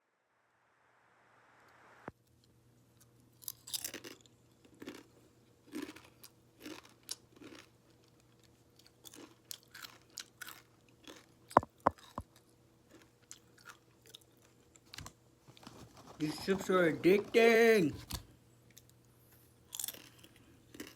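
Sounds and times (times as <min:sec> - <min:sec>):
crunching and chewing potato chips: 0:03.0 - 0:15.7, 0:18.7 - 0:20.9.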